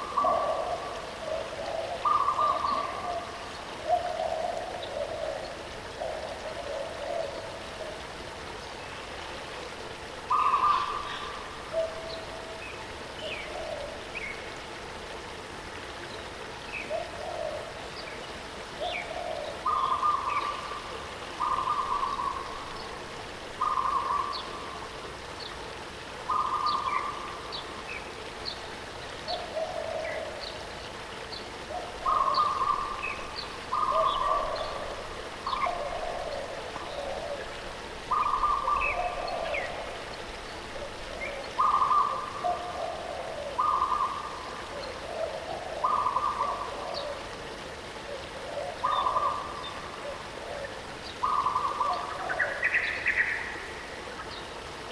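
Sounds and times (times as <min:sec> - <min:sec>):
waterfall rushing: 0:17.6 - 0:25.4, 0:26.0 - 0:54.9.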